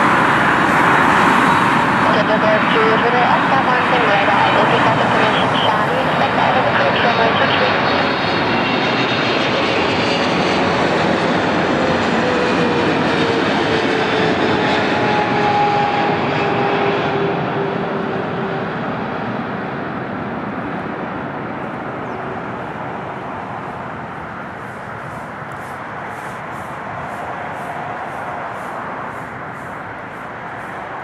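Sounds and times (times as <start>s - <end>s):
jet engine roar: 0.0s - 31.0s.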